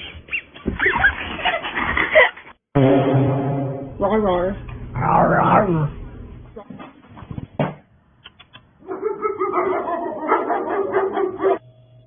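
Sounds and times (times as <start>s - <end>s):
dog barking and yelping: 8.8s - 11.6s.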